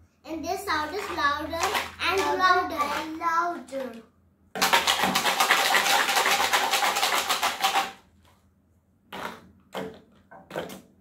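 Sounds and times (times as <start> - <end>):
fast rattling of shaken object: 1.0 - 3.0, 4.6 - 8.0.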